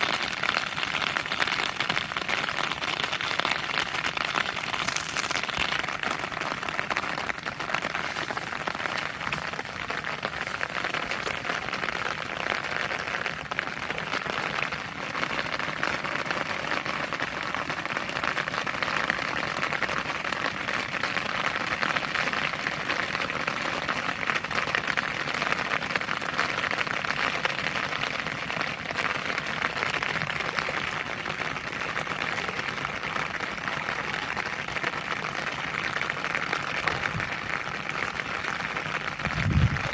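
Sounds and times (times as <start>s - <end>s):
heavy rain falling: 0.0s - 39.9s.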